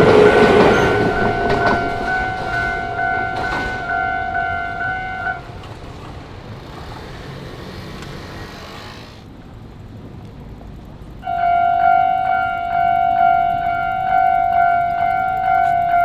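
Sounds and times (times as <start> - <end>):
level crossing warning bell: 0.0 - 7.5, 11.2 - 16.0
passing vehicle noise: 0.0 - 16.0.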